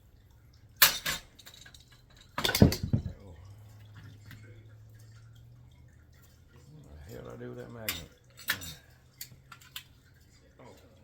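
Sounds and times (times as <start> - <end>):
metal parts and tools clattering: 0.8 - 3.2, 7.9 - 9.9.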